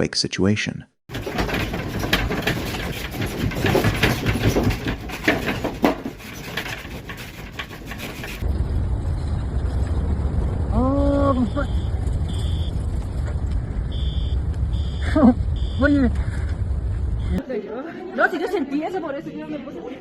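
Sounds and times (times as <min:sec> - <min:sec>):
clattering and knocking: 0:01.1 - 0:08.5
noisy rumble: 0:01.1 - 0:17.4.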